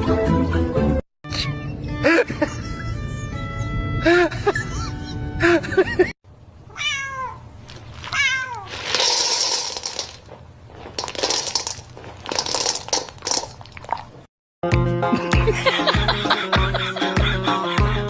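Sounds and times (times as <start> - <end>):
music: 0.0 - 4.3, 14.6 - 18.0
cat meowing: 6.7 - 7.4, 8.1 - 8.7.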